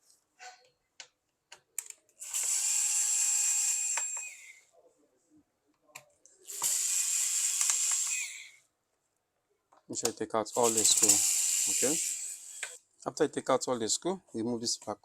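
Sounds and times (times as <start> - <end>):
electric screwdriver whirring: 2.2 - 4.6, 6.5 - 8.6, 10.6 - 12.8.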